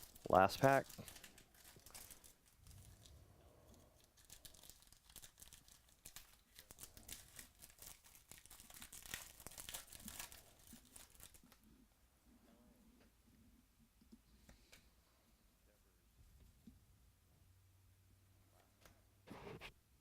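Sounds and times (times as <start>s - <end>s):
wrapper tearing and crinkling: 0.0s - 3.1s, 4.0s - 11.6s.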